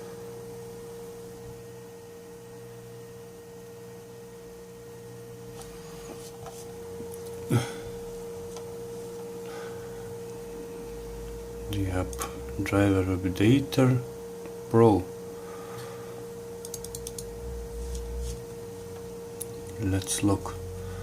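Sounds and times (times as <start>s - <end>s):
high electrical whine: 0.0s - 21.0s
low hum: 4.6s - 21.0s
faint clicks: 16.6s - 17.3s.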